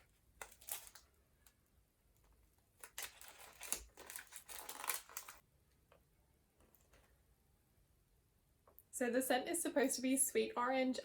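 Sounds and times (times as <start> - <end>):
packaging crinkling and rustling: 0.0 - 1.6, 2.4 - 5.4.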